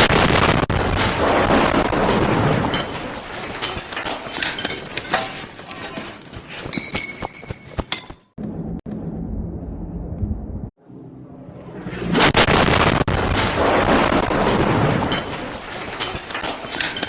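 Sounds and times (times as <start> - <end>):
explosion blast and rumble: 0.0 - 3.5, 8.4 - 10.8, 11.8 - 16.1.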